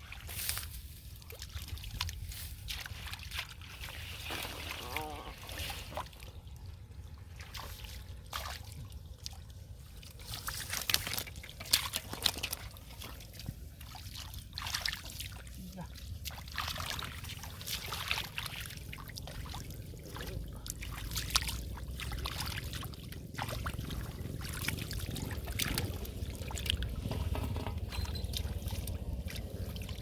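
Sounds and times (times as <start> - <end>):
water splashing and dripping: 0.0 - 30.0
steady low rumble: 15.3 - 30.0.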